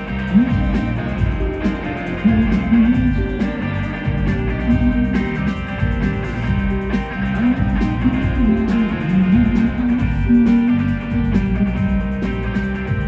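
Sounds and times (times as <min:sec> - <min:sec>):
drum strokes: 0:00.0 - 0:13.0
rock band playing live: 0:00.0 - 0:13.0.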